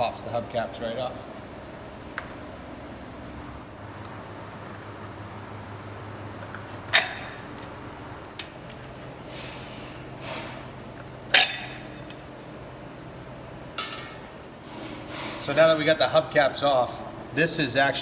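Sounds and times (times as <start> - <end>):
low steady hum: 2.6 - 14.7
hubcaps snapping off with clinks: 6.8 - 12.4, 13.7 - 14.4.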